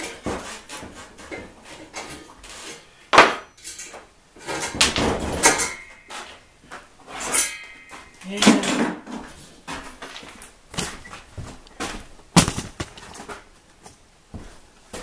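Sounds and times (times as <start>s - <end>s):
metal parts and tools clinking: 3.5s - 6.3s.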